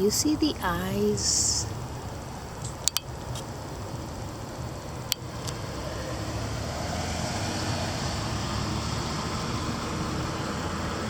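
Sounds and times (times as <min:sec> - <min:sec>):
road traffic noise: 0:00.0 - 0:11.0
sharp clicks: 0:02.6 - 0:03.5.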